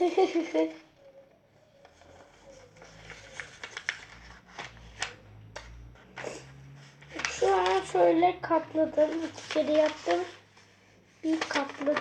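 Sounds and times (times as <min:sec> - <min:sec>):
paper rustling: 0:01.7 - 0:12.0
paper crackling: 0:01.8 - 0:12.0.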